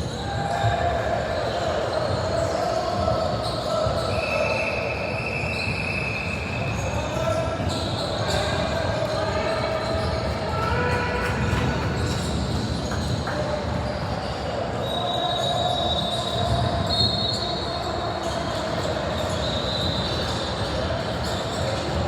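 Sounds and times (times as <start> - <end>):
voices echoing in hall: 0.0 - 22.0
brief high squeaks: 13.9 - 22.0.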